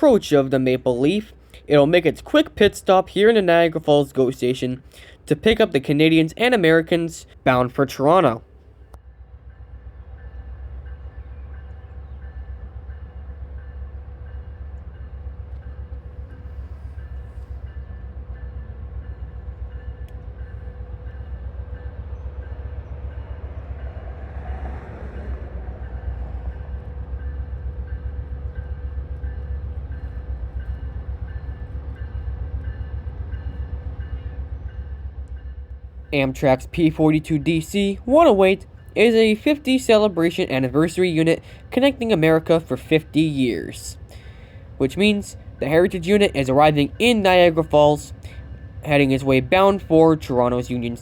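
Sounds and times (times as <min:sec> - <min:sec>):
diesel locomotive rumbling: 0:00.0 - 0:51.0.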